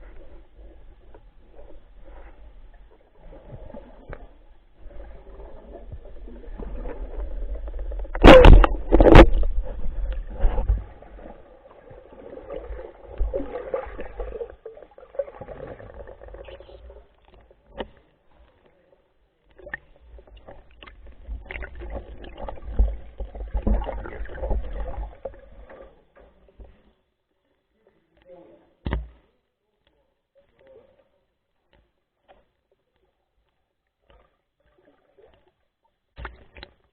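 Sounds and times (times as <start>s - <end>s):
water splashing and bubbling: 0.0s - 17.8s, 19.5s - 26.1s, 34.0s - 36.9s.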